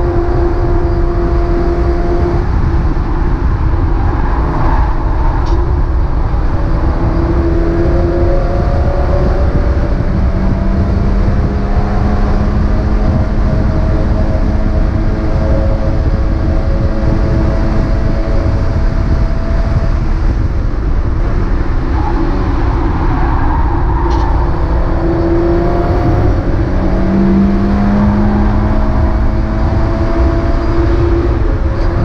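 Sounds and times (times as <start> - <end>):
race car engine running hard: 0.0 - 32.0
road and wind rumble: 0.0 - 32.0.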